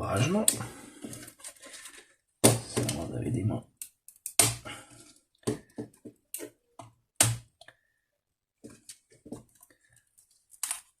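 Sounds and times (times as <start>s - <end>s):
laptop parts clicking and knocking: 3.8s - 4.6s, 5.4s - 7.7s, 8.6s - 11.0s.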